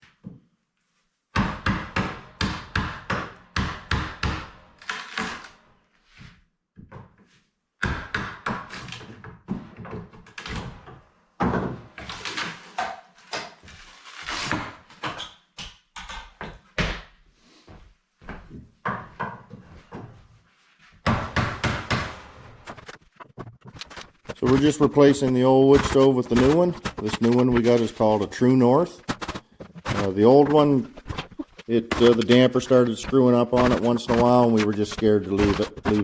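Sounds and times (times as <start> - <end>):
hard objects knocking: 29.0 - 36.0.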